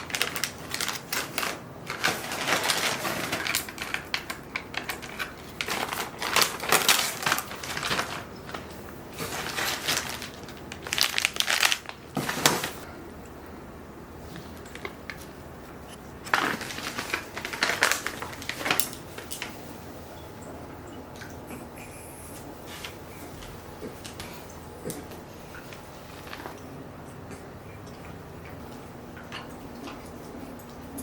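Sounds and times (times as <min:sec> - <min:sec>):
items being handled with crinkling: 0:00.0 - 0:12.9, 0:14.2 - 0:20.2, 0:22.6 - 0:26.7.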